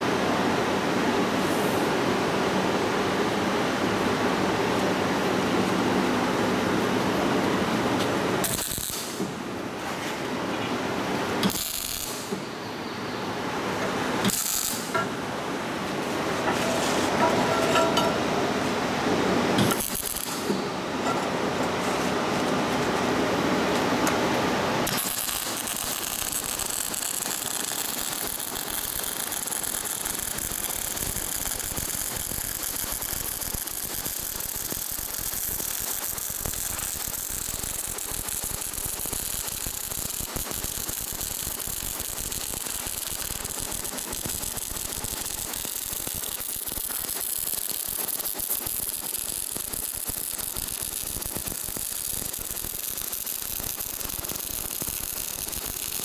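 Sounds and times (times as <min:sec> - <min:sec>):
welding arc crackling: 0:08.4 - 0:09.3, 0:11.4 - 0:12.4, 0:14.2 - 0:15.2, 0:19.5 - 0:20.6, 0:21.6 - 0:56.0.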